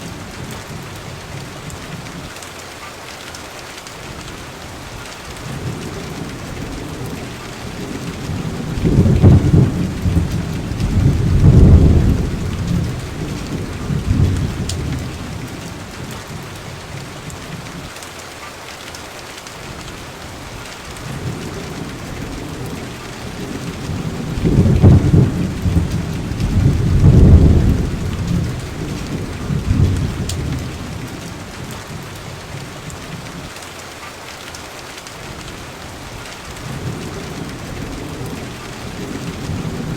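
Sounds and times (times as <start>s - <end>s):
steady rain: 0.0s - 39.9s
thunder rolling: 5.6s - 16.2s, 21.0s - 32.0s, 36.6s - 39.9s.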